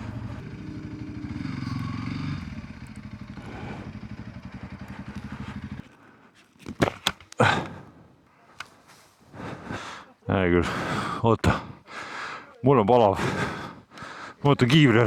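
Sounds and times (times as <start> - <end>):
motorcycle engine running: 0.0 - 5.9.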